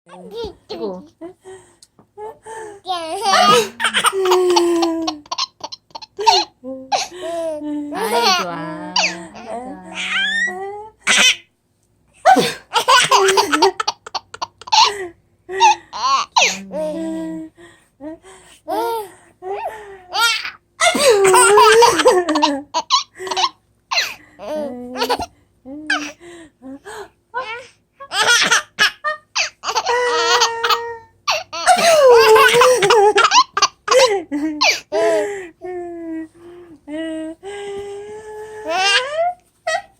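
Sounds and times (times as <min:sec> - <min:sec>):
baby laughing: 0:02.9 - 0:07.3, 0:12.4 - 0:15.0, 0:19.6 - 0:24.2, 0:28.1 - 0:34.8.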